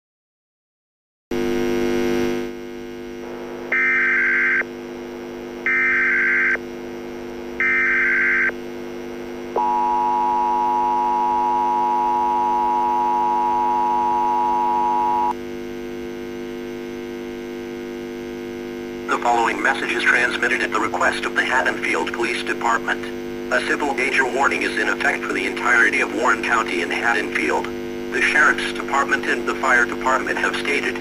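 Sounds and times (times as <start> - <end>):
low hum: 1.4 - 31.0
data burst tones: 3.7 - 4.6, 7.6 - 8.5, 9.6 - 15.3
two-tone attention signal: 7.6 - 8.5, 9.6 - 15.4.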